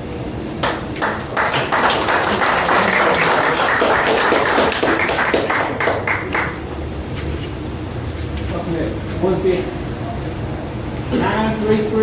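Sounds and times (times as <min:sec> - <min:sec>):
crowd applauding: 0:00.6 - 0:06.8.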